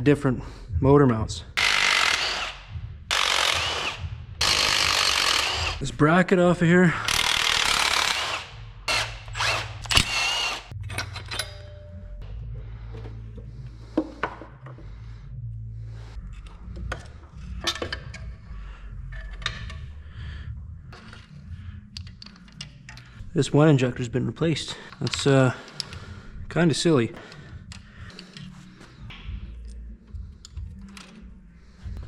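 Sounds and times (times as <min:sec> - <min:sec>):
power tool bursts: 0:01.6 - 0:05.8, 0:07.1 - 0:10.7
ratchet clicks: 0:01.6 - 0:05.8, 0:07.1 - 0:10.7.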